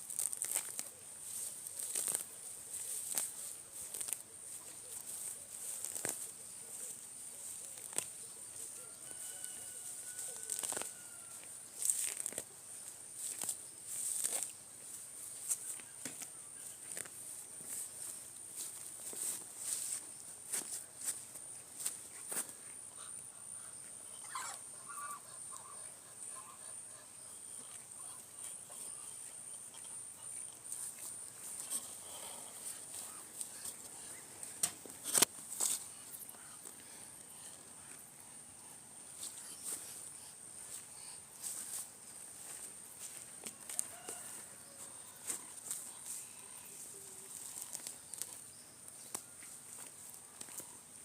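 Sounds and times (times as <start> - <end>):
short bird calls: 23.0 - 29.2.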